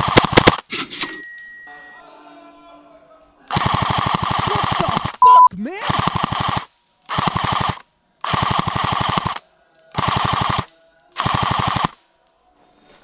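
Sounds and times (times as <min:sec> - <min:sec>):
airsoft rifle automatic bursts: 0:00.0 - 0:00.6, 0:03.5 - 0:05.3, 0:05.9 - 0:09.4, 0:10.0 - 0:12.0.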